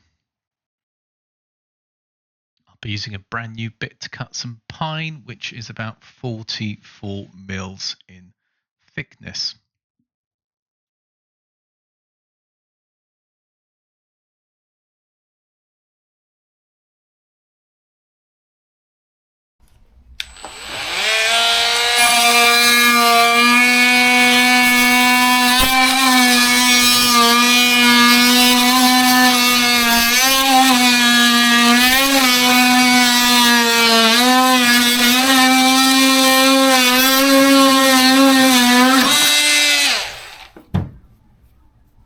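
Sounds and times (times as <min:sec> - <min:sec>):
oscillating multi-tool cutting wood: 0:20.2 - 0:40.6.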